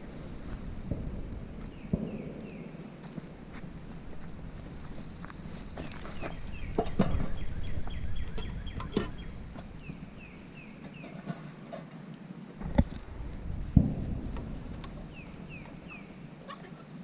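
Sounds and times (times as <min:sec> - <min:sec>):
small bird chirping: 0:05.9 - 0:11.2
low rumble: 0:12.6 - 0:16.4.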